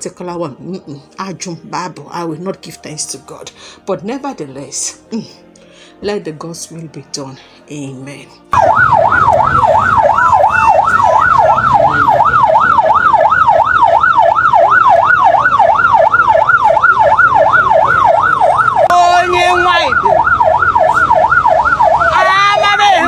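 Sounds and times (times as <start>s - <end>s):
vehicle siren yelping: 8.6s - 23.0s.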